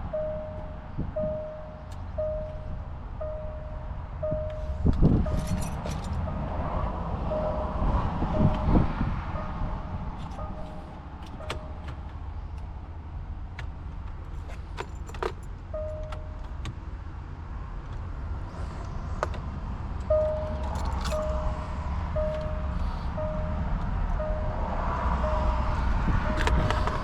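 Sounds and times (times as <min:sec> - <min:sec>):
car warning chime beeping: 0:00.0 - 0:12.1, 0:15.6 - 0:16.6, 0:20.0 - 0:27.0
low rumble: 0:00.0 - 0:14.0
keys jingling: 0:05.3 - 0:06.3, 0:14.2 - 0:16.4, 0:20.3 - 0:21.7.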